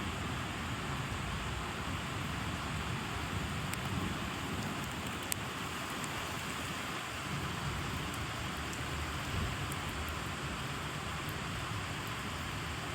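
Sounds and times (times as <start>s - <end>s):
steady rain falling: 0.0s - 12.9s
raindrops ticking: 3.6s - 12.2s.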